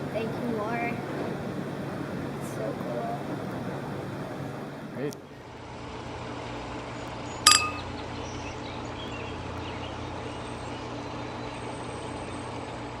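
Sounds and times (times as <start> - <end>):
short high beep: 7.5 - 7.8.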